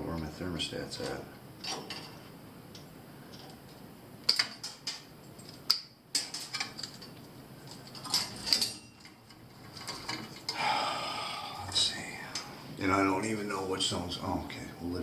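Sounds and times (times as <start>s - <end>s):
metal parts and tools clicking: 7.7s - 10.6s.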